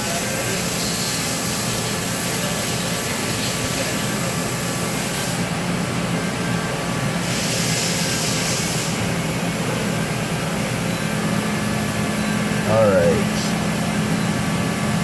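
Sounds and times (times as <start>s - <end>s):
machine hiss: 7.2s - 9.2s.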